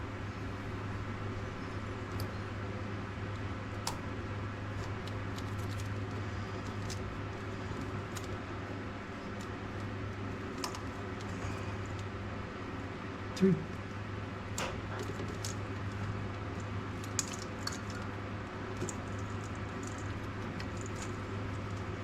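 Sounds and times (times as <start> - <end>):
steady low hum: 0.0 - 22.0
parts clicking and rattling: 4.7 - 8.4, 14.5 - 22.0.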